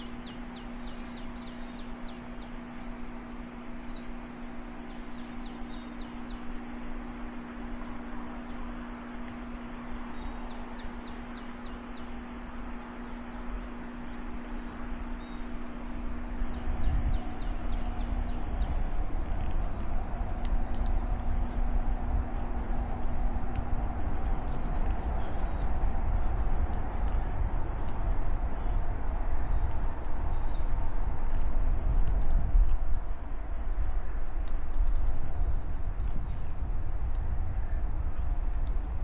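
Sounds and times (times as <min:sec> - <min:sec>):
steady hiss: 0:00.0 - 0:00.5
bird chirping in descending runs: 0:00.0 - 0:36.6
low rumble: 0:00.0 - 0:39.0
low steady hum: 0:00.0 - 0:39.0.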